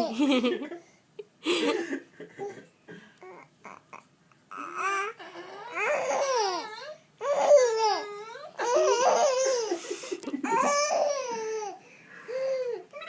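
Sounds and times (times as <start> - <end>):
baby laughing: 8.6 - 11.7.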